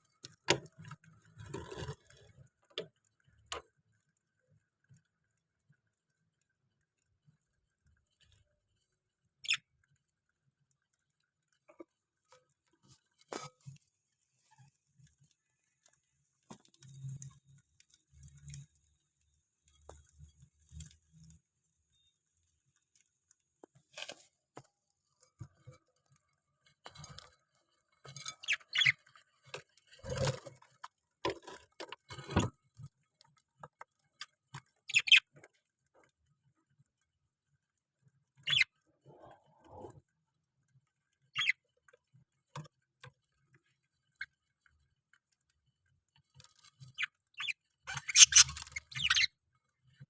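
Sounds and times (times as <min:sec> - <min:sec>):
parrot sharp chirps: 0:47.4 - 0:49.3.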